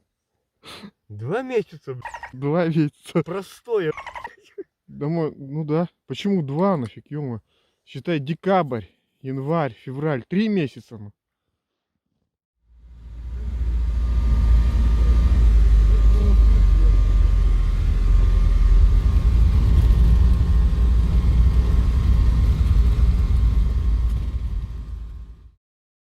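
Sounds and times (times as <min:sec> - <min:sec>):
faint whine: 0:12.8 - 0:25.6
vehicle engine rumble: 0:12.8 - 0:25.6.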